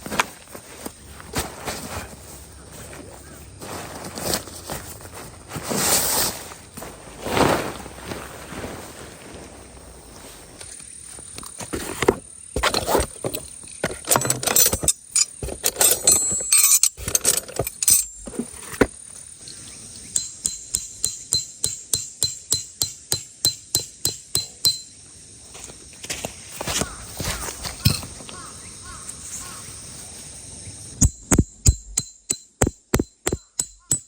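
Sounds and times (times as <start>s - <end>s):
metal camping gear clattering: 11.6s - 25.0s, 26.8s - 28.5s
hammer striking metal tent stake: 20.1s - 25.0s, 31.0s - 34.0s.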